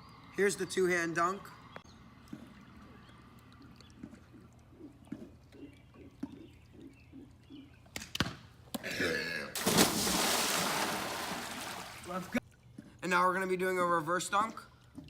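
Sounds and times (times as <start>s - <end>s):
person splashing into pool: 9.6s - 12.4s.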